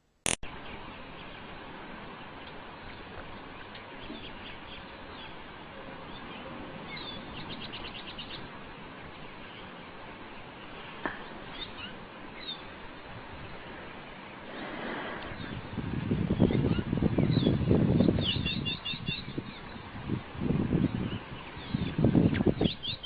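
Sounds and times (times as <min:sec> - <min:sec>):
steady background hiss: 0:00.0 - 0:23.0
bird chirping: 0:21.0 - 0:23.0.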